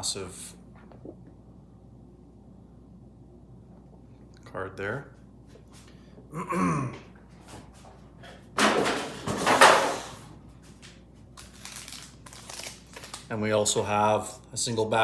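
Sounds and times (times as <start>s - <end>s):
packaging rustling: 11.3s - 13.3s.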